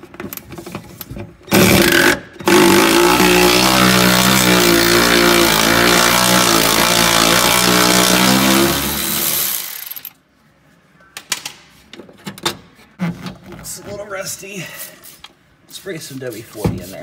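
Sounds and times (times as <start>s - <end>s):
power tool running: 1.6s - 10.1s.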